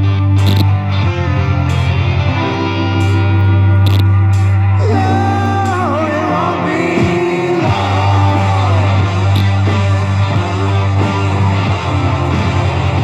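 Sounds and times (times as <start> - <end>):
rock music: 0.0 - 13.0.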